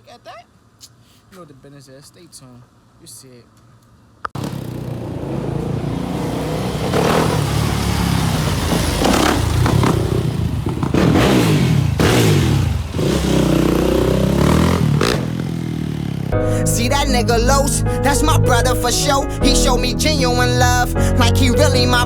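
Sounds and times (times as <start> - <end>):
off-road vehicle engine revving: 4.4 - 16.4.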